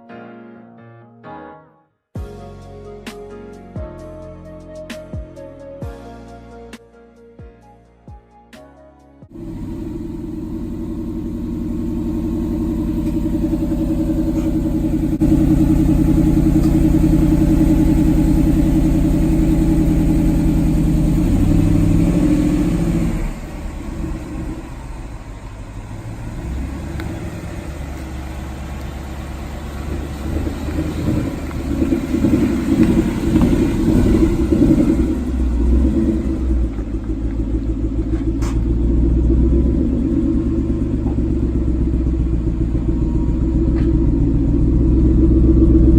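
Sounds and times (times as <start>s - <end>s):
car engine revving: 9.3s - 45.9s.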